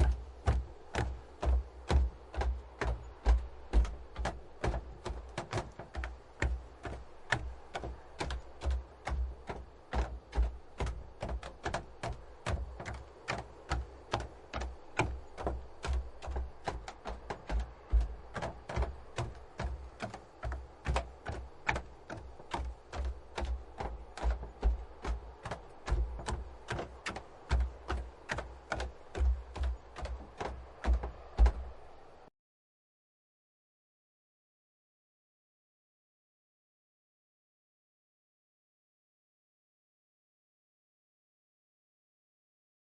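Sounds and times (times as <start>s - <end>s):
footsteps on wooden planks: 0.0s - 32.3s.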